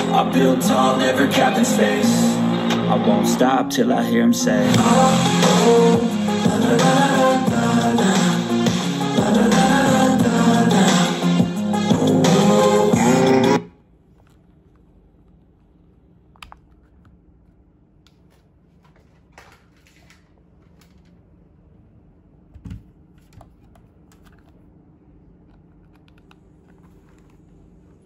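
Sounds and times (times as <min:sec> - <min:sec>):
faint steady hum: 0:13.6 - 0:28.0.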